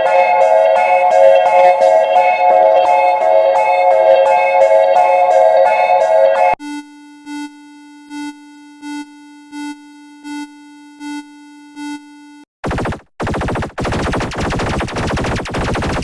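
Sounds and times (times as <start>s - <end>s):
pulsing electronic alarm tone: 0.0s - 6.6s.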